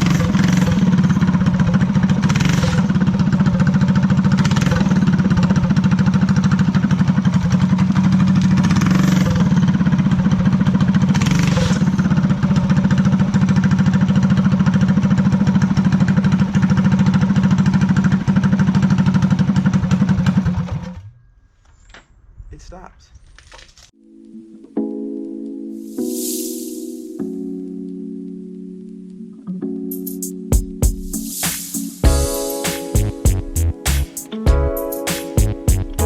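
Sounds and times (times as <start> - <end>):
single-cylinder engine running: 0.0 - 21.0.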